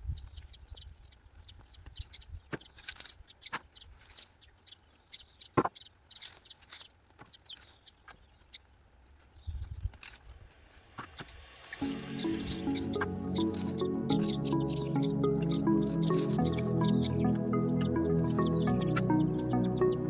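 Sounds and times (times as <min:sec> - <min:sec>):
birds chirping: 0:10.5 - 0:20.0.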